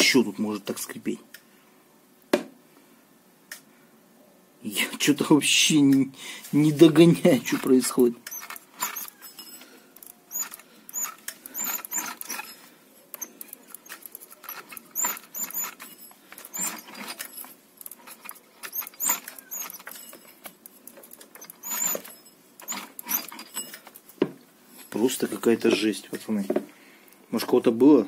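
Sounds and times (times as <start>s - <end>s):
engine high-pitched squeaking: 7.3s - 24.0s.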